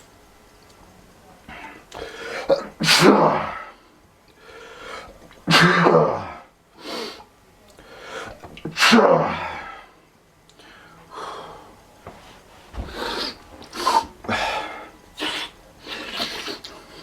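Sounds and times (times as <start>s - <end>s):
person sneezing: 1.5s - 3.7s, 5.5s - 7.2s, 8.7s - 9.8s.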